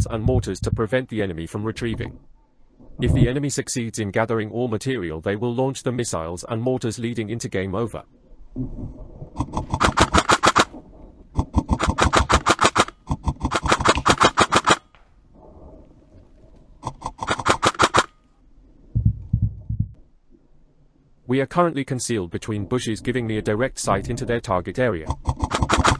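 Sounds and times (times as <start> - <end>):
airsoft gun full-auto bursts: 9.4 - 10.8, 11.4 - 14.8, 16.8 - 18.2, 25.1 - 25.9
dull low thumps: 18.9 - 20.0.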